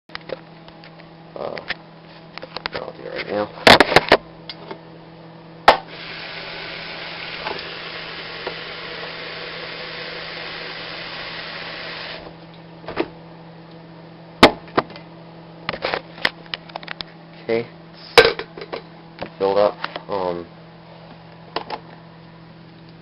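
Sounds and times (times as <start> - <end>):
tap water filling carafe: 6.9 - 12.2.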